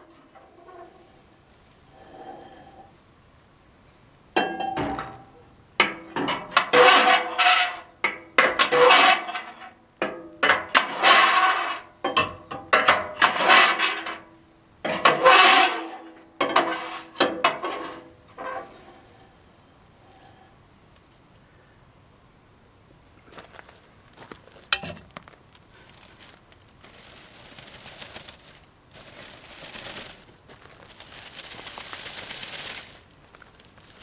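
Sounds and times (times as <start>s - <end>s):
metal scraping and clanking: 0.0s - 3.0s, 4.4s - 20.6s.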